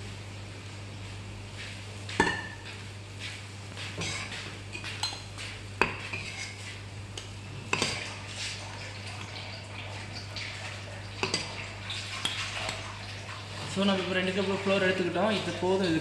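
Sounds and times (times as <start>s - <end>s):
steady low hum: 0.0s - 16.0s
cup scraping flour: 6.0s - 6.8s.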